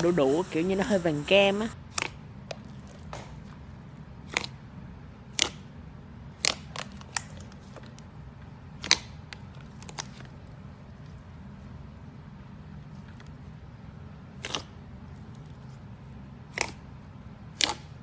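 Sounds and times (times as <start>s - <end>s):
low steady hum: 0.0s - 18.0s
slime squished by hand: 16.4s - 16.8s, 17.5s - 18.0s.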